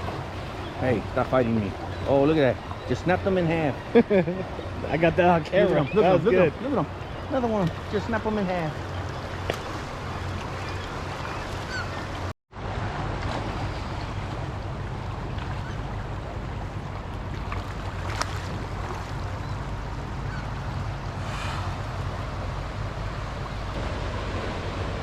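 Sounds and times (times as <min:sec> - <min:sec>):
water rushing: 0:00.0 - 0:25.0
faint bird calls: 0:10.0 - 0:12.1, 0:19.3 - 0:21.9
wind noise: 0:20.8 - 0:25.0.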